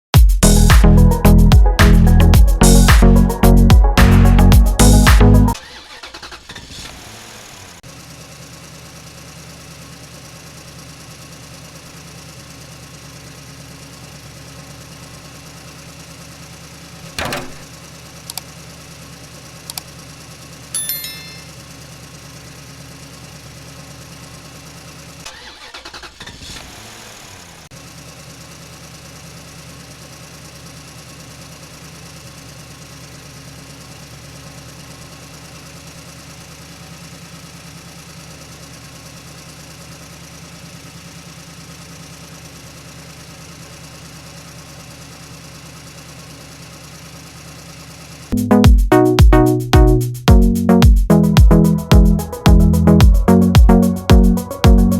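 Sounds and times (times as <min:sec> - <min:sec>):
small engine idling: 0:05.5 - 0:48.4.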